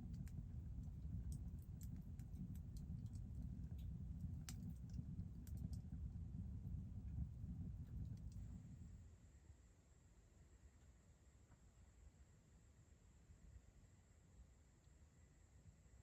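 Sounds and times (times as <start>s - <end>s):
firewood crackling and popping: 0.0s - 8.5s
low rumble of fire: 0.0s - 9.1s.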